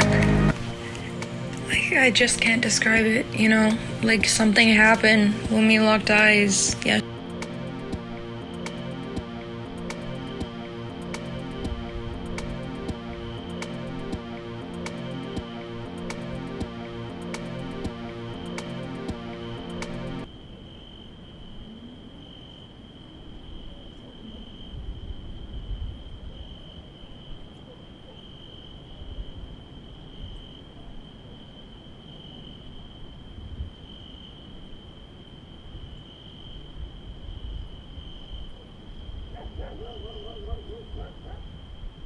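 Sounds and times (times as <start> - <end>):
low rumbling noise: 0.0 - 20.3.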